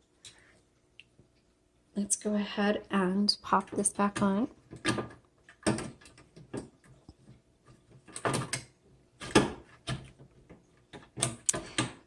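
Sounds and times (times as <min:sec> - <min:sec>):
typewriter cover clicks and clunks: 0:08.1 - 0:10.2.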